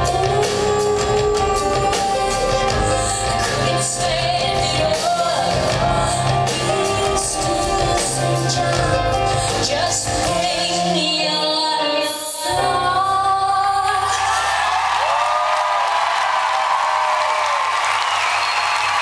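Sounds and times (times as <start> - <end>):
band with bass and drums: 0.0 - 11.2
woman singing: 0.0 - 14.7.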